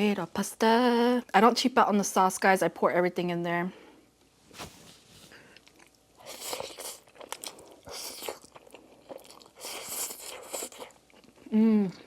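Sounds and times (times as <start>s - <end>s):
wet chewing and biting: 5.5s - 11.4s.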